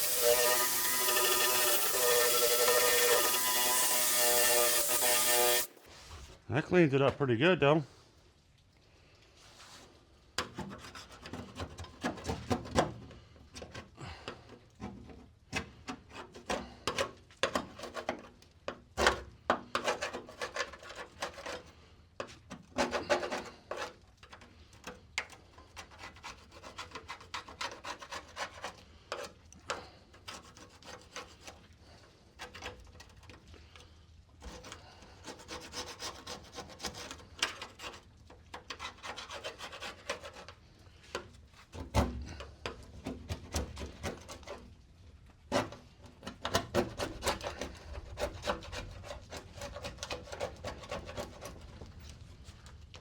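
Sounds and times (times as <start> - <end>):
scraping coating off steel: 0.0 - 6.4.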